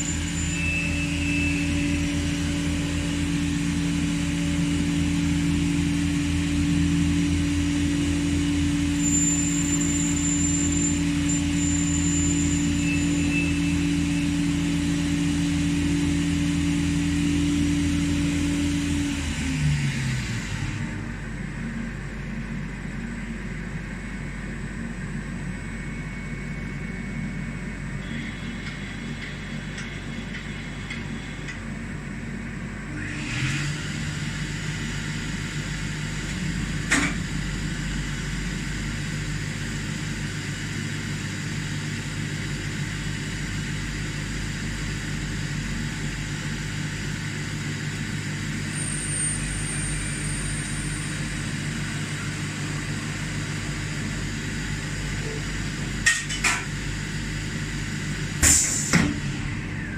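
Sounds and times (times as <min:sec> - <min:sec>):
lathe machine hum: 0:00.0 - 0:56.1
hiss: 0:58.4 - 0:59.1.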